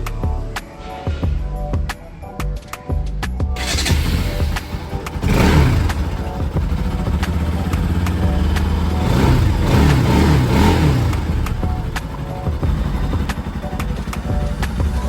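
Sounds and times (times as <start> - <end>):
motorcycle engine idling and revving: 0.0 - 15.0.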